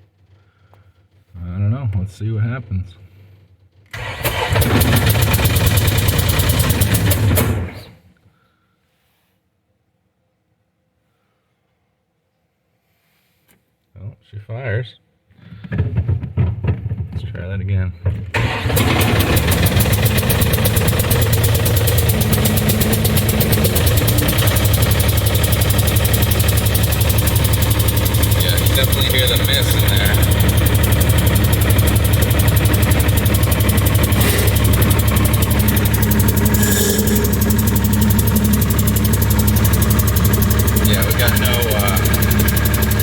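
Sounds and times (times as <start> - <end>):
diesel engine cranking on starter: 3.9 - 8.1, 18.3 - 43.0.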